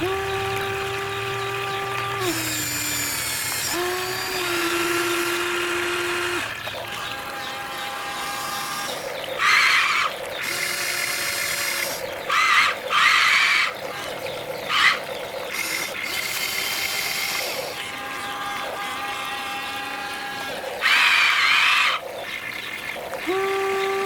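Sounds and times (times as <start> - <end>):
higher motor whines: 0.0 - 12.5, 23.2 - 24.0
electric motors whining: 0.0 - 24.0.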